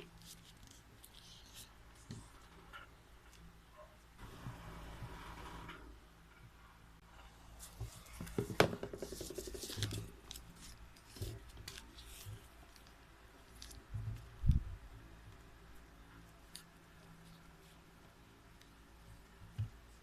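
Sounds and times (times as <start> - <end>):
paper rustling: 7.6 - 14.3.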